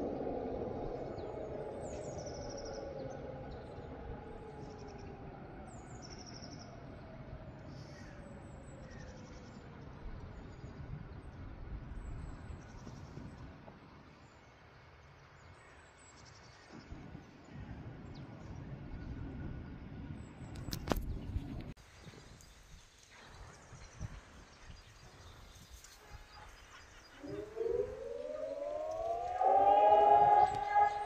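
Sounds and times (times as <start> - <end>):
distant warning sirens winding down: 0.0 - 10.3, 27.2 - 31.0
small birds chirping: 20.4 - 31.0.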